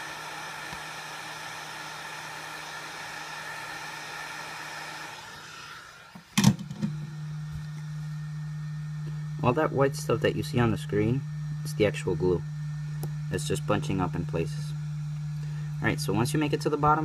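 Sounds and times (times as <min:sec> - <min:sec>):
heat gun blowing with fan whine: 0:00.0 - 0:17.0
steady low hum: 0:06.7 - 0:17.0.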